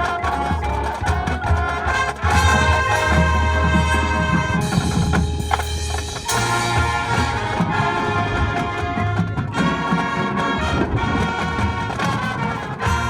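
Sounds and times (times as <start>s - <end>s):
marching band playing: 0.0s - 13.0s.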